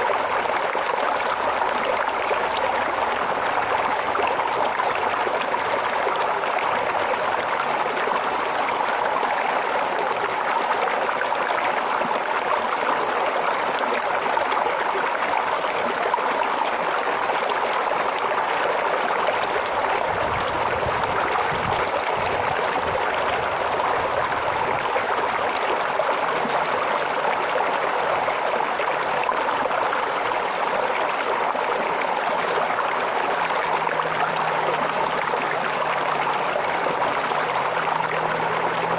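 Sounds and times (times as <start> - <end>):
stream running over stones: 0.0 - 38.9.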